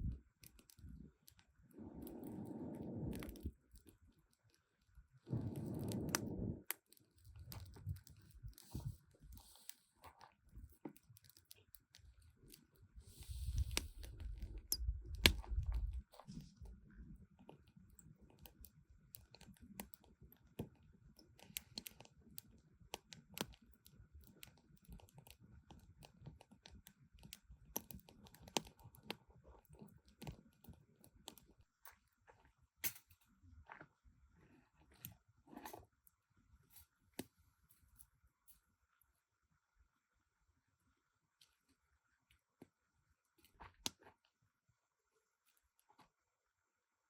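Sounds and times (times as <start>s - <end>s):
chewing and crunching food: 0.0s - 33.0s.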